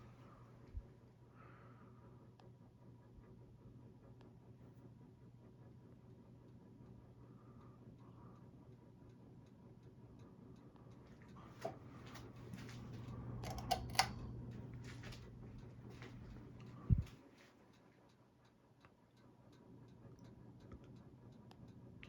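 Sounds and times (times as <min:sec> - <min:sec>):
ceiling fan motor humming: 0:11.1 - 0:17.5
sharp clicks: 0:13.0 - 0:14.3.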